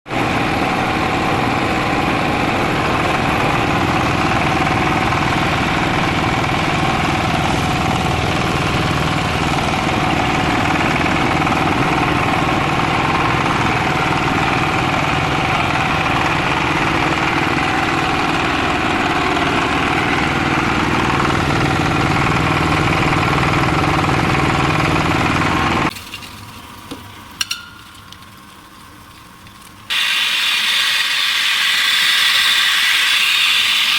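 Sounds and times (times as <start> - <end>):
milling machine hum and clatter: 25.3 - 33.9.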